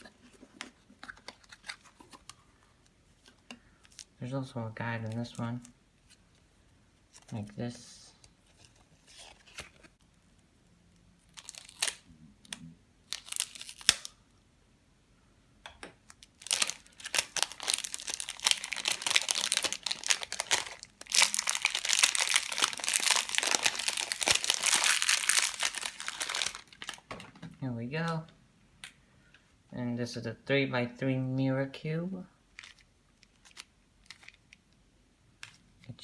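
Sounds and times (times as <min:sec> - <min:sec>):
packaging crinkling and tearing: 0:11.2 - 0:14.2, 0:16.2 - 0:27.2, 0:32.5 - 0:34.6.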